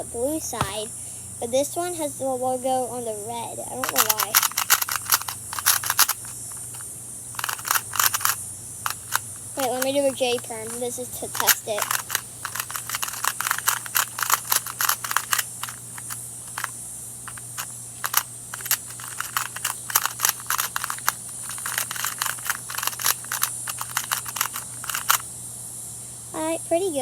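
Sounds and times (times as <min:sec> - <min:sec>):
puzzle cube plastic clicks: 0:03.8 - 0:06.8, 0:07.4 - 0:25.3.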